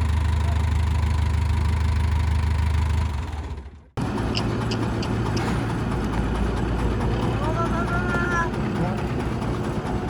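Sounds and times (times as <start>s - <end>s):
diesel engine idling: 0.0s - 10.0s
differently pitched engine: 2.1s - 10.0s.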